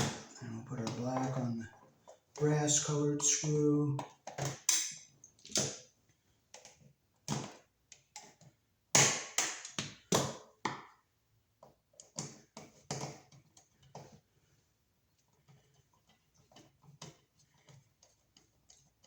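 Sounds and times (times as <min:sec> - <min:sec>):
hand tools tapping and clicking: 0:00.0 - 0:05.8.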